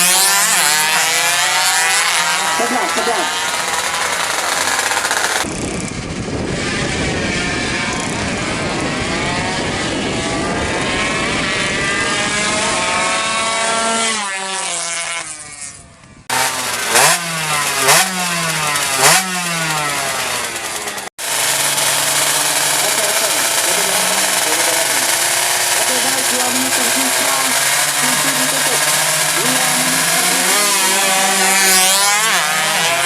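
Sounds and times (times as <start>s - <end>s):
engine throttle blips: 0.0s - 33.0s
two-stroke motorbike engine revving: 0.0s - 33.0s.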